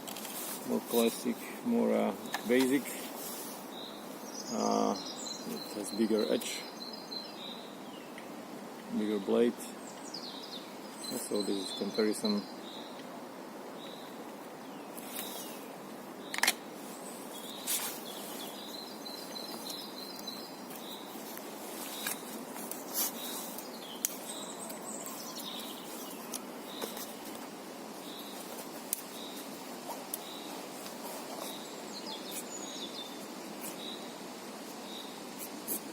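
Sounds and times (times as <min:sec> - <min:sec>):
outdoor background noise: 0:00.0 - 0:35.9
small bird chirping: 0:13.8 - 0:34.1.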